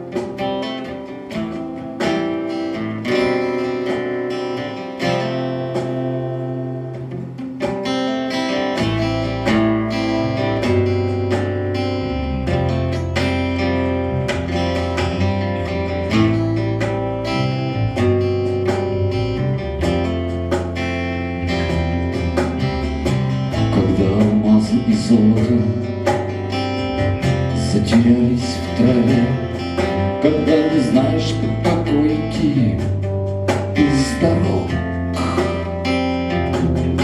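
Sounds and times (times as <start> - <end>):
strummed acoustic guitar: 0.0 - 37.0
bass line: 8.6 - 37.0
wavering lead melody: 8.6 - 37.0
drum hits: 12.4 - 32.0, 32.8 - 37.0.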